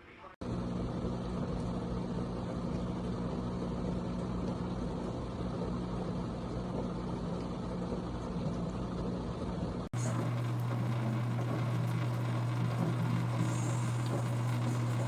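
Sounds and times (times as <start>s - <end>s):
dishwasher running: 10.0s - 15.0s.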